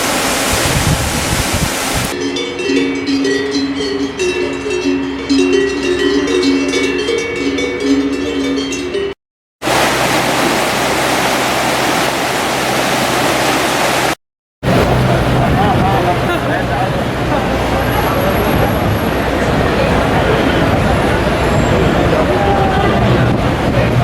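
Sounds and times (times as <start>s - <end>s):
cowbells clanking: 2.2s - 9.2s.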